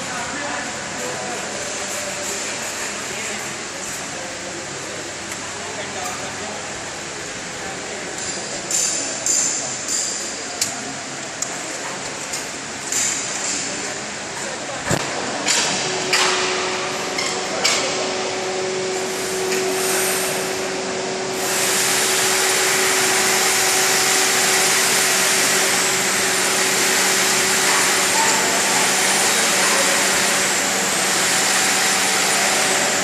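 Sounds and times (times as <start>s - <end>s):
steady machine hum: 12.1s - 33.0s
loud rushing hiss: 18.4s - 33.0s.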